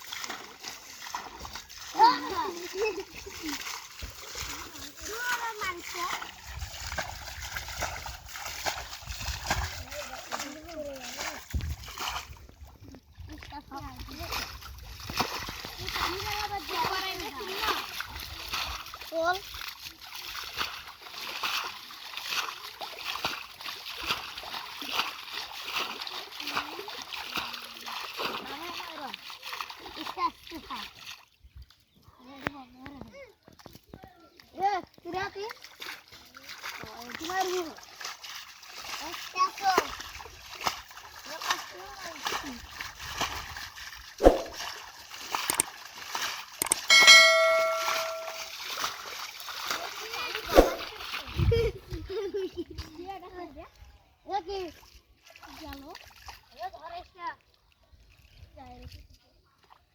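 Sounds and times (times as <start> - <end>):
water splashing: 0.0 - 31.1, 35.5 - 51.3
metal object clang: 46.6 - 48.5.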